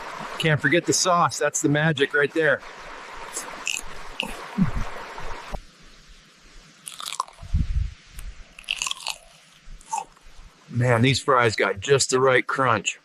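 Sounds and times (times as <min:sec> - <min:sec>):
rustling hiss: 0:00.0 - 0:13.0
chewing crisp fries: 0:06.8 - 0:07.4, 0:08.6 - 0:10.2.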